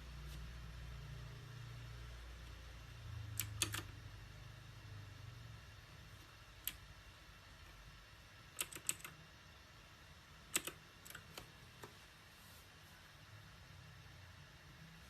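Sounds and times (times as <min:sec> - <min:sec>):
mechanical keyboard keys clacking: 0:03.4 - 0:03.9, 0:08.6 - 0:09.2, 0:10.5 - 0:11.5.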